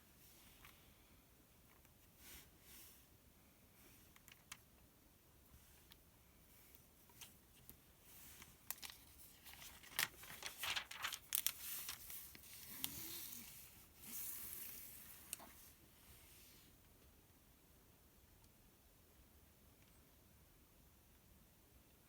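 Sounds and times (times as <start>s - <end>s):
paper pages turning and crinkling: 7.0s - 15.7s
paper rustling sweep: 8.1s - 15.4s.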